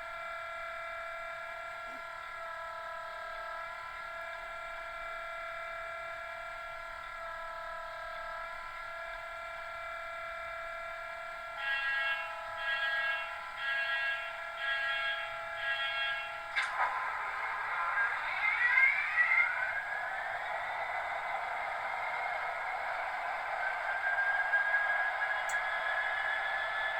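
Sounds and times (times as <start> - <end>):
thin diesel engine drone: 12.5 - 26.9
sudden noisy burst: 16.5 - 26.2.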